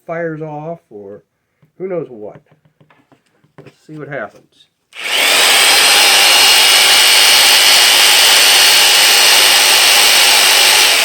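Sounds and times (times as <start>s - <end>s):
electric jigsaw whining: 5.0s - 11.0s.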